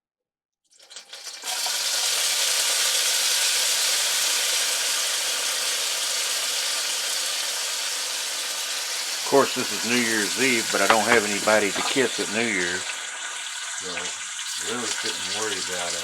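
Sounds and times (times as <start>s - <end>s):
onion sizzling in hot oil: 0.9s - 9.2s, 12.6s - 16.0s.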